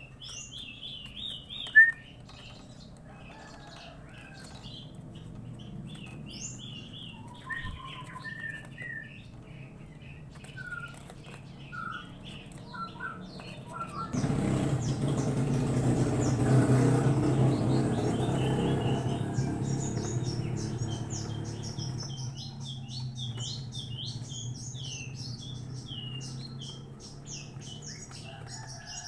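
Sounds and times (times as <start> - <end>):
chicks chirping: 0.0 - 29.0.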